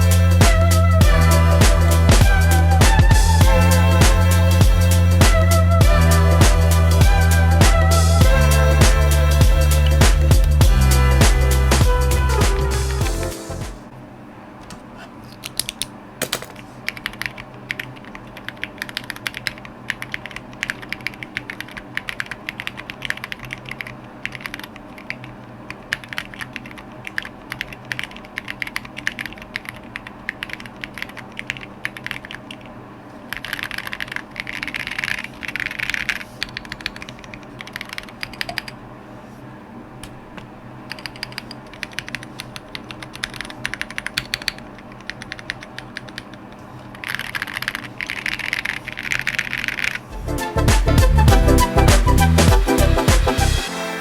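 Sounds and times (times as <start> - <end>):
mechanical keyboard typing: 15.3 - 32.7, 33.3 - 38.8, 40.9 - 50.0.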